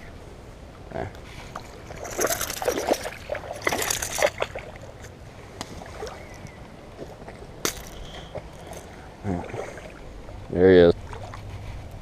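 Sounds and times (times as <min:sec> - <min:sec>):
fish thrashing water splashing: 0:01.8 - 0:05.0.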